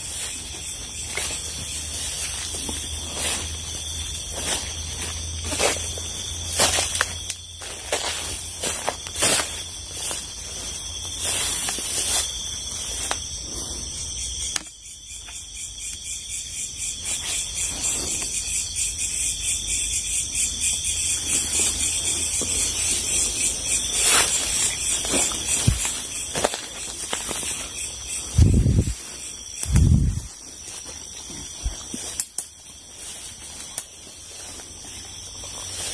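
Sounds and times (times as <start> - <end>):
footsteps through undergrowth: 0.0 - 13.4, 21.6 - 35.9
insects trilling: 0.0 - 35.9.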